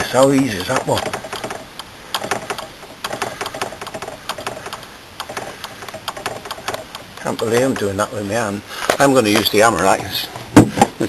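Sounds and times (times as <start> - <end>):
small metallic clicks and knocks: 0.3 - 8.0.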